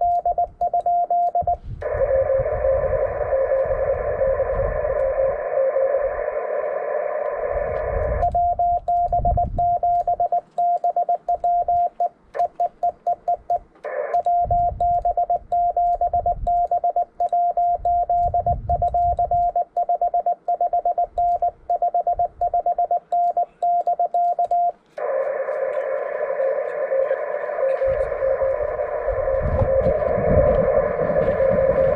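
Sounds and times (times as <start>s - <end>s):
fast morse code beeps: 0.0s - 5.9s, 8.0s - 31.9s
faint morse signal: 0.0s - 31.9s
receiver hiss: 0.0s - 31.9s
low rumbling: 27.5s - 31.9s.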